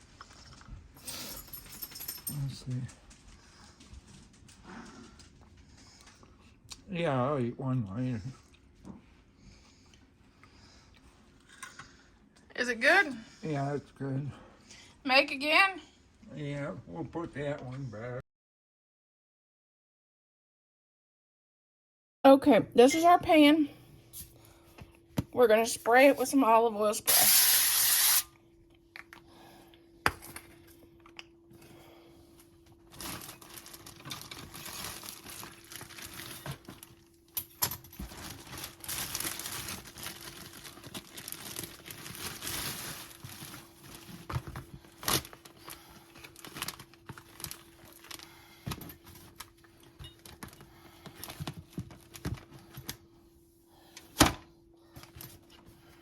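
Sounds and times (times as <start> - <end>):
faint steady hum: 22.3 - 56.0
packaging crinkling and tearing: 32.9 - 48.4, 50.2 - 53.0.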